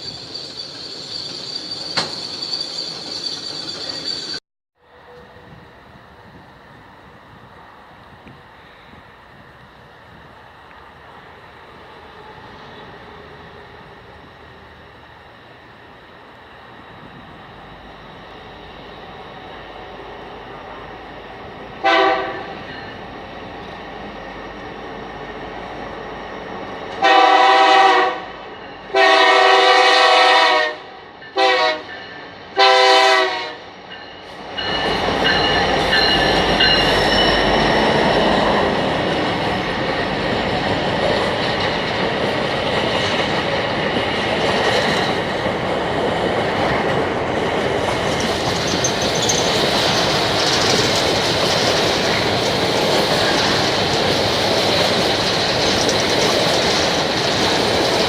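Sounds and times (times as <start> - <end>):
wheels clattering on rails: 0.0 - 4.4, 34.0 - 58.0
train rumbling past: 0.0 - 58.0
locomotive horn blasts: 21.8 - 22.5, 27.0 - 31.9, 32.6 - 33.7.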